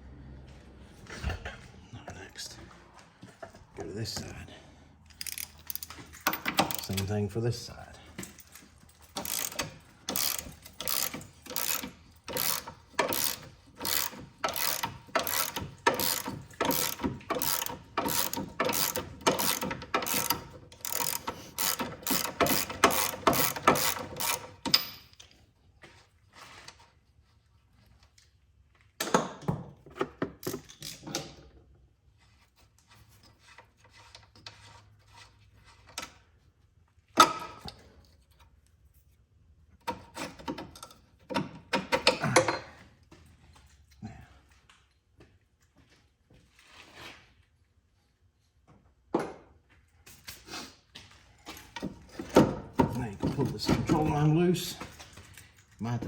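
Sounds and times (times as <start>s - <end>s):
ratchet wrench clicking: 5.1s - 7.0s, 9.1s - 25.0s.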